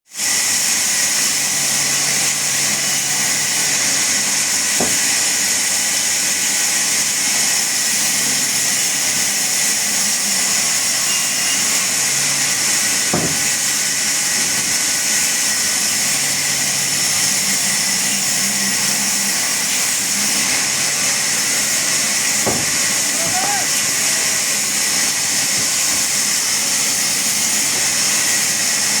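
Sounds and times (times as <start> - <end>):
power saw running: 0.2 - 29.0.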